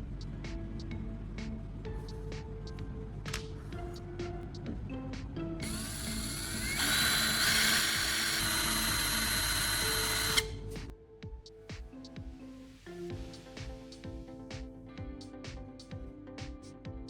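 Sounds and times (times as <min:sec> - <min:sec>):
background music: 0:00.0 - 0:17.0
electric drill boring into metal: 0:05.6 - 0:10.6.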